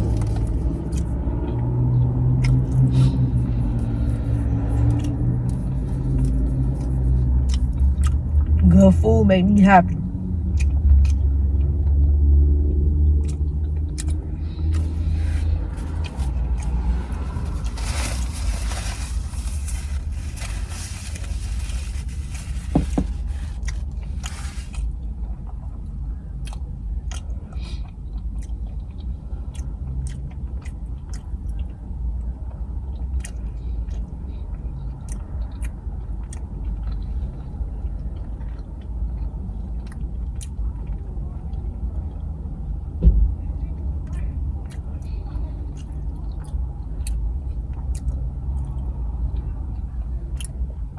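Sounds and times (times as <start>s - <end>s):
chewing and crunching food: 0.0s - 8.6s, 9.8s - 50.9s
low rumble: 9.8s - 28.2s.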